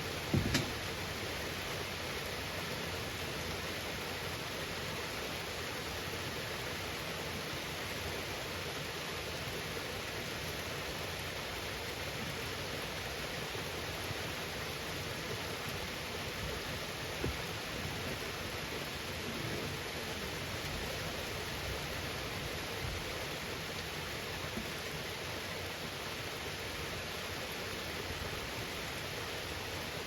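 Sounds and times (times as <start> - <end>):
steady rain falling: 0.0 - 30.0
short knocks: 0.3 - 0.8.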